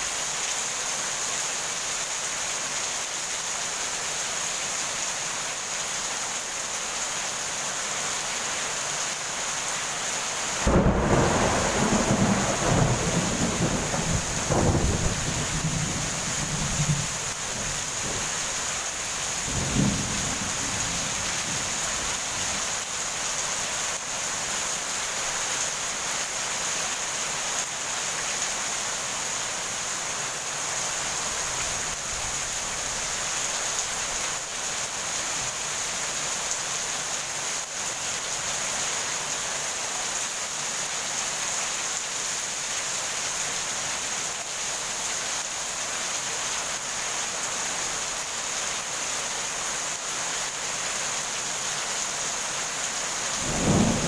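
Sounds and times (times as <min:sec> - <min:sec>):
heavy rain falling: 0:00.0 - 0:54.0
thunder rumbling: 0:10.6 - 0:22.7, 0:53.3 - 0:54.0.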